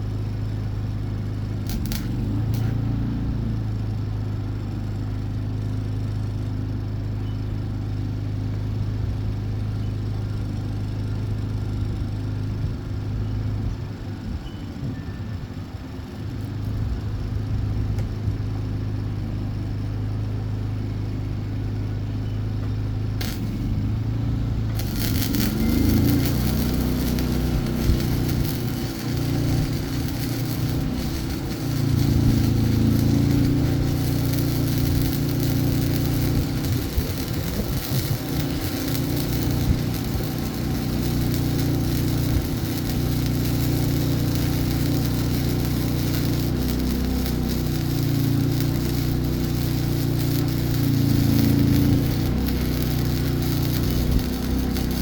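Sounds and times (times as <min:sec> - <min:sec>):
welder arc crackling: 0:01.6 - 0:03.0, 0:23.2 - 0:55.0
low hum: 0:23.1 - 0:55.0.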